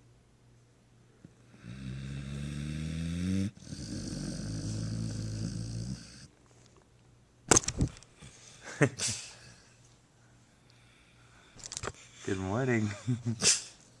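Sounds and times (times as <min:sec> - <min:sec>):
dog snoring loudly: 0:01.4 - 0:06.3.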